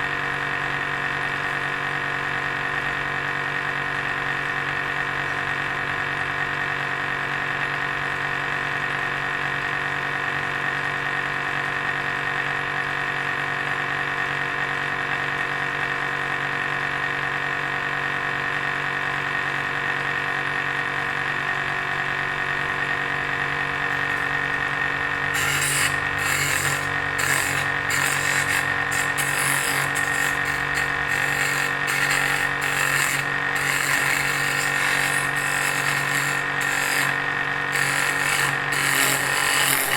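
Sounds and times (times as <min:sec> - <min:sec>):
drill press motor running: 0:23.7 - 0:39.9
chisel scraping turning wood: 0:25.3 - 0:39.9.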